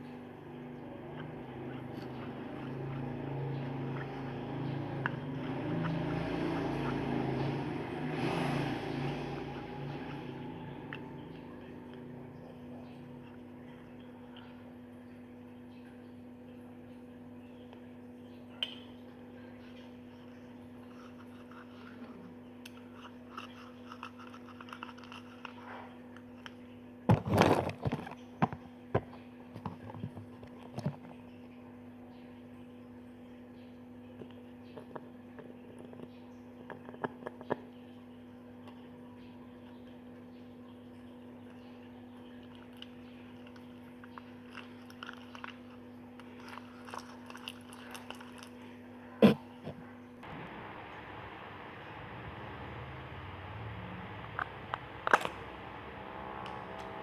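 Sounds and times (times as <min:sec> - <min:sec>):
steady low hum: 0:00.0 - 0:57.0
light clicks and scrapes: 0:19.6 - 0:26.6.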